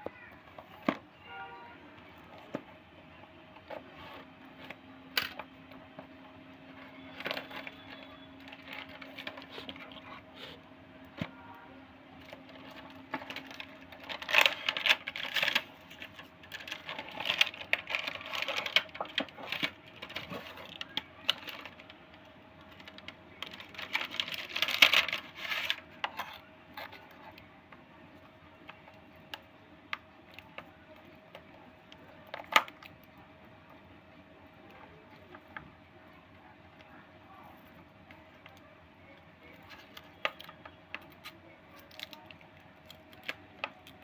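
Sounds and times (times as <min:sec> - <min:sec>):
plastic packaging rustling: 0:06.8 - 0:10.4, 0:12.2 - 0:27.2.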